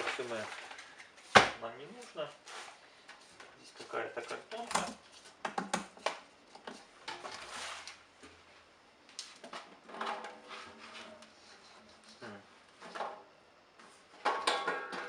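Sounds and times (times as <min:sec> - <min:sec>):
cardboard rustling and scraping: 0:07.2 - 0:08.0.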